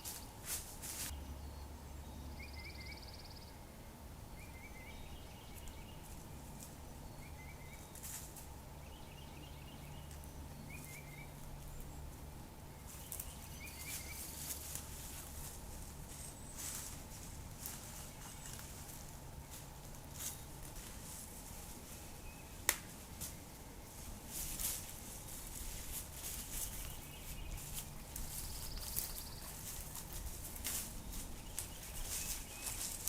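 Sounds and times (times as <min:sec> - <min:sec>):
faint rustles: 0:00.0 - 0:01.2, 0:07.7 - 0:08.6, 0:10.0 - 0:33.0
small bird chirping: 0:12.9 - 0:14.6, 0:26.5 - 0:29.8.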